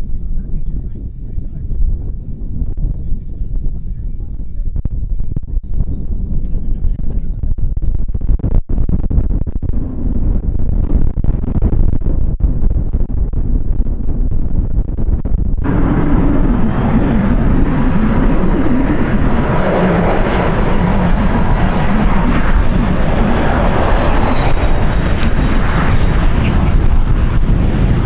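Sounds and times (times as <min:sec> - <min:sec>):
wind buffeting microphone: 0:00.0 - 0:28.0
high falling whine: 0:12.7 - 0:28.0
jet engine passing: 0:15.6 - 0:28.0.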